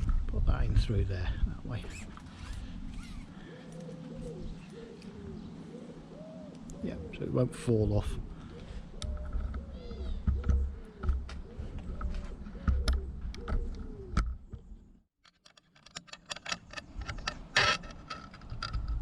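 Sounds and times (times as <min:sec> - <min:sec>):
clutch cable clicking and rattling: 0:09.0 - 0:14.4.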